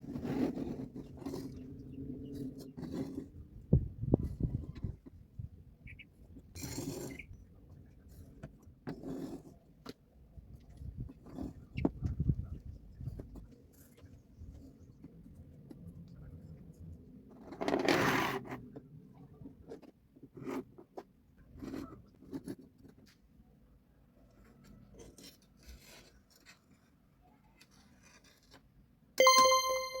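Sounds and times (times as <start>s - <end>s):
loud pitched ringing tone: 29.2s - 30.0s.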